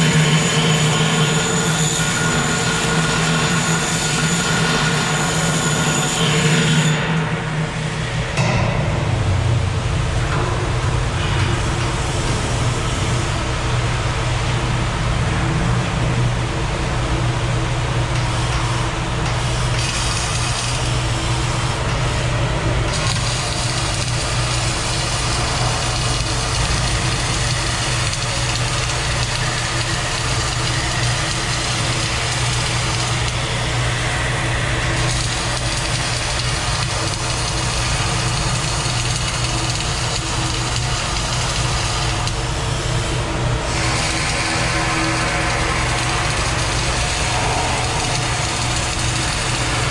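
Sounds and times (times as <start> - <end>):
low hum of machinery: 0.0 - 49.9
welding arc hissing: 34.9 - 49.9.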